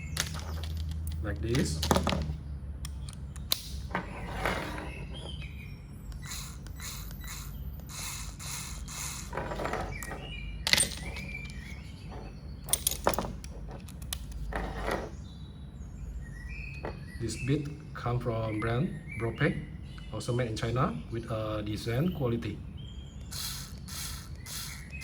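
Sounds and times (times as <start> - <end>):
clicks and rattles of handling: 0.2 - 5.4, 9.3 - 15.1.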